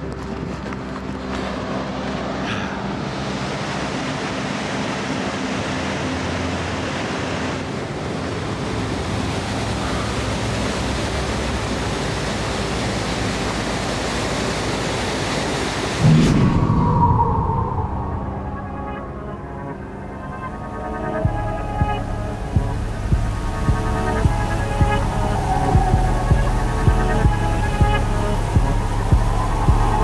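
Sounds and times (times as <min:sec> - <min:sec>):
waterfall roaring: 0:00.0 - 0:30.0.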